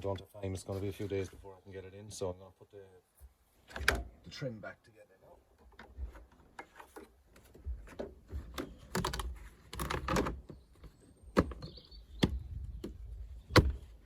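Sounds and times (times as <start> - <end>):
plastic trim clicking and rattling: 5.7 - 13.9.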